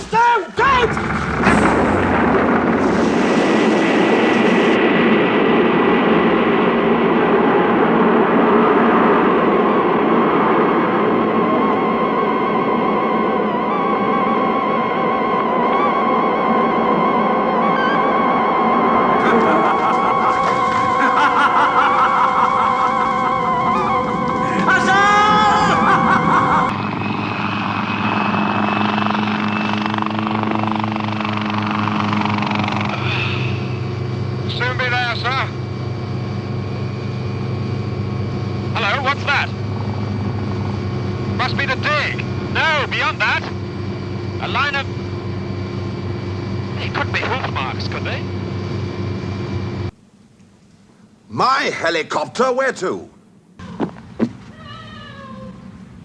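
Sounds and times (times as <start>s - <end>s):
wind roaring: 0.0s - 34.7s
helicopter engine and rotor drone: 0.6s - 50.0s
dramatic music: 11.9s - 26.7s.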